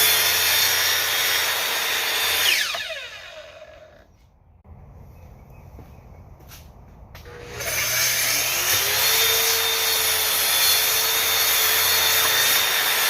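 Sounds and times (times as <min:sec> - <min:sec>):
track saw motor whine: 0:00.0 - 0:04.2, 0:07.2 - 0:13.0.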